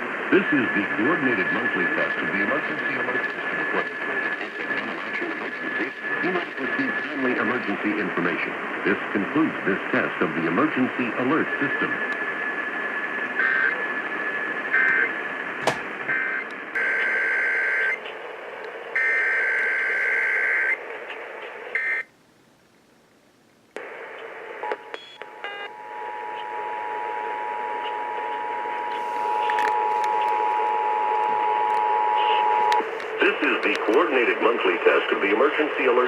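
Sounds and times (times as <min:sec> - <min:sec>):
radio static: 0:00.3 - 0:12.2, 0:23.8 - 0:36.0.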